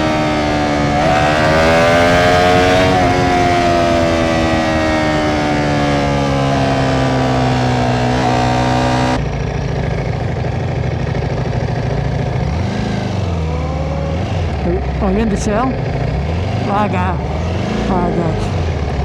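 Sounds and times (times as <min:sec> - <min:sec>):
wind noise: 0:00.0 - 0:09.2
motorcycle engine: 0:00.0 - 0:19.0.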